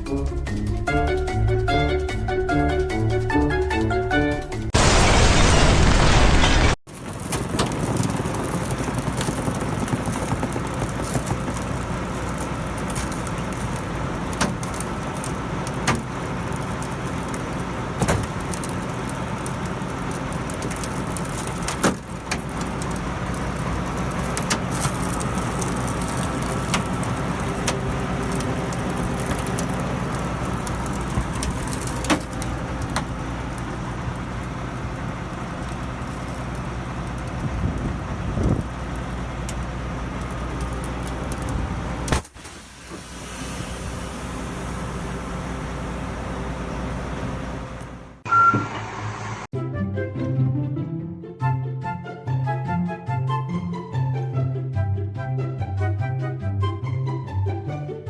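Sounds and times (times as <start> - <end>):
short loud burst of noise: 4.8 - 6.8, 48.3 - 49.5
low mechanical hum: 6.4 - 49.5.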